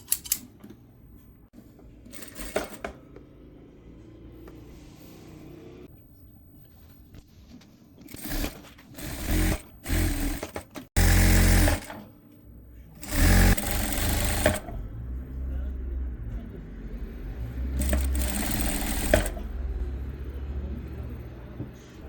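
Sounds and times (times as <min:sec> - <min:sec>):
sewing machine stitching: 0:02.0 - 0:03.1, 0:08.0 - 0:12.1, 0:13.0 - 0:14.8, 0:17.6 - 0:19.6.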